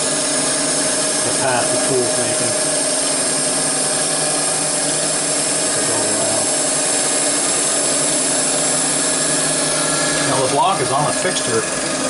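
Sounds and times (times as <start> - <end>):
cnc mill spindle whirring: 0.0 - 12.0.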